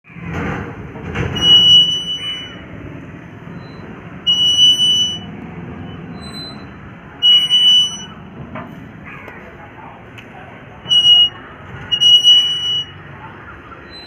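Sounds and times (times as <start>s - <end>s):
rusty door hinge squealing: 1.3s - 2.6s, 3.5s - 8.2s, 10.8s - 13.0s, 13.6s - 14.0s.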